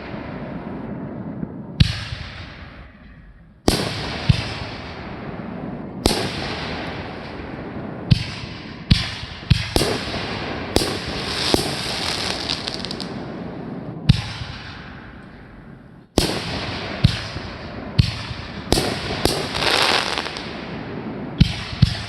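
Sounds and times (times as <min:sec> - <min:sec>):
fireworks bangs: 0:00.0 - 0:22.0
fireworks hissing: 0:10.9 - 0:13.1, 0:19.4 - 0:20.4.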